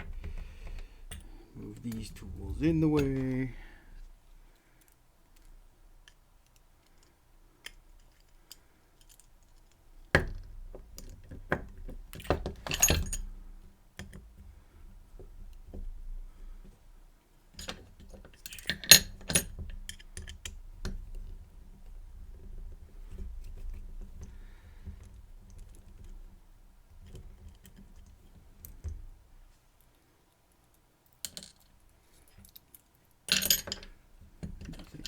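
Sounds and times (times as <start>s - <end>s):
metal lock parts clinking: 1.0s - 3.5s, 12.1s - 13.3s, 17.6s - 20.4s, 30.6s - 35.0s.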